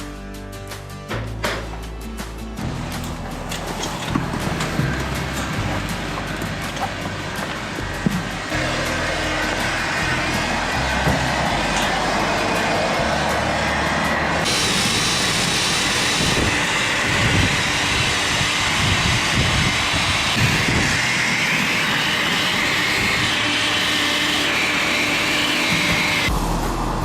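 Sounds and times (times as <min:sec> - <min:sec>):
loud machine whine: 0:02.6 - 0:27.0.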